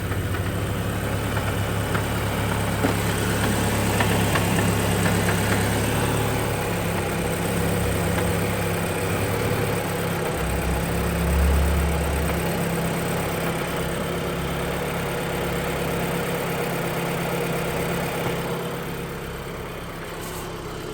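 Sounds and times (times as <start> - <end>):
deeper engine drone: 0.0 - 14.7
car engine idling: 0.0 - 20.9.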